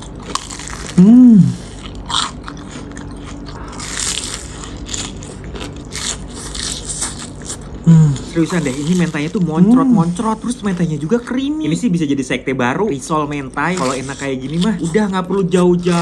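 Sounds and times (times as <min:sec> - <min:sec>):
crunching and chewing food: 0:00.0 - 0:16.0
person humming mmm: 0:00.8 - 0:01.9, 0:07.8 - 0:08.4.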